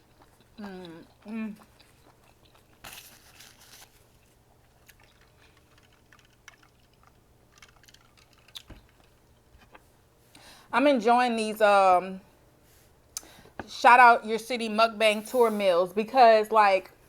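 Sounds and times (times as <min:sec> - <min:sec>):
chewing with wet mouth clicks: 0:00.0 - 0:02.9, 0:04.2 - 0:09.8.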